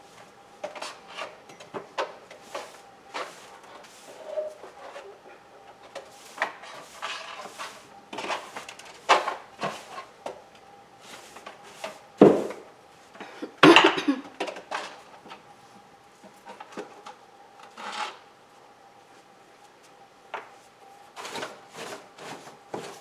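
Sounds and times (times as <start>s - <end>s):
scraping rubbing and clattering: 0.6s - 10.1s, 21.1s - 23.0s.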